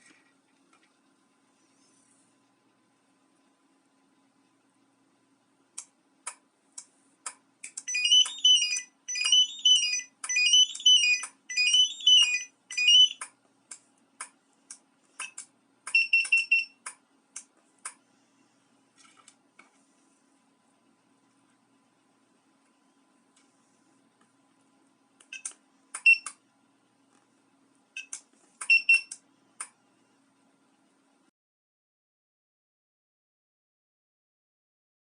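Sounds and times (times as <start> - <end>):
piezo buzzer melodic beeps: 7.8 - 13.2
quick beeps: 7.9 - 13.2.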